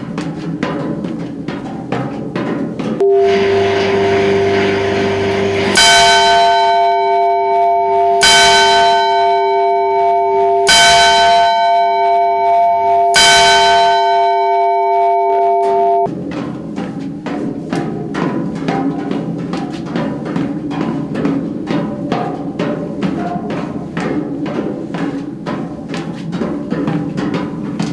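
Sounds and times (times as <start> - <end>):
bell ringing: 3.0 - 16.1
lower held bell tone: 3.0 - 16.1.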